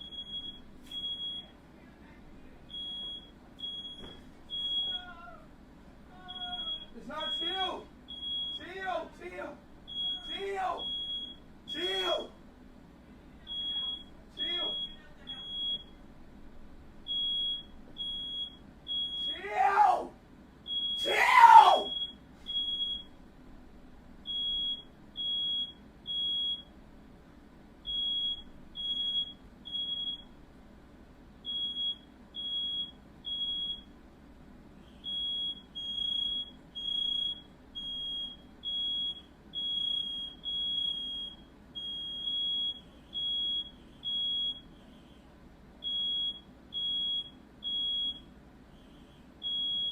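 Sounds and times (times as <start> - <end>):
smoke alarm beeping: 0.0 - 1.6, 2.7 - 5.1, 6.3 - 8.8, 9.9 - 12.2, 13.5 - 16.0, 17.1 - 19.4, 20.7 - 21.1, 21.8 - 23.2, 24.3 - 26.8, 27.8 - 30.4, 31.4 - 33.9, 34.9 - 44.8, 45.8 - 49.9
person yelling loudly: 19.3 - 20.2, 21.0 - 21.9.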